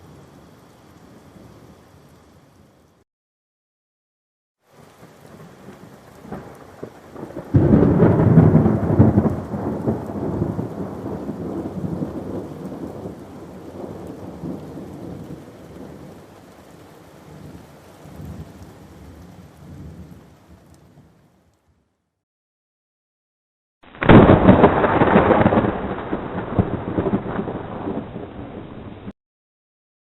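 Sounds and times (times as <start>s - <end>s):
rain falling: 0.0s - 3.0s, 4.6s - 21.8s, 23.9s - 29.2s
loud thunderclap rumbling: 6.3s - 16.2s, 23.9s - 29.1s.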